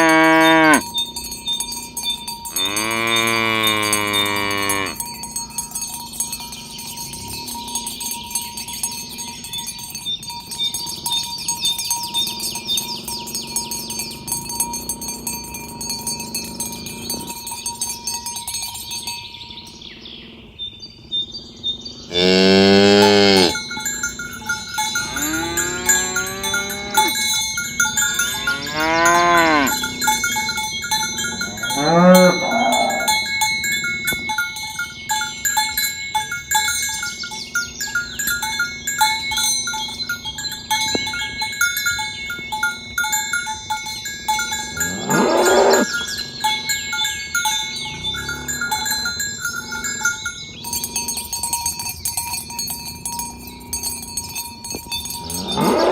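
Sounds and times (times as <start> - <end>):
cows mooing: 0.0 - 0.9, 2.5 - 5.0, 22.1 - 33.3, 44.6 - 47.1, 47.7 - 50.1, 55.2 - 55.9
cow bells clanking: 0.0 - 20.2, 22.1 - 55.9.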